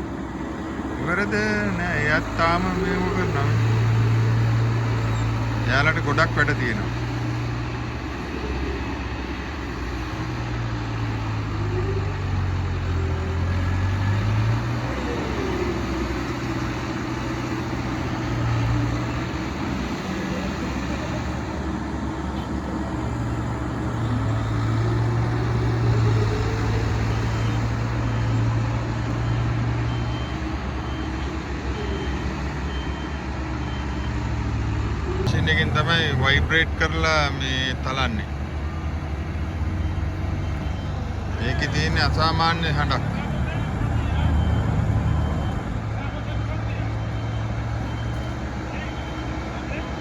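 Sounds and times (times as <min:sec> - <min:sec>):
road roller droning: 0:00.0 - 0:50.0
reversing beeper: 0:01.0 - 0:06.9, 0:11.4 - 0:50.0.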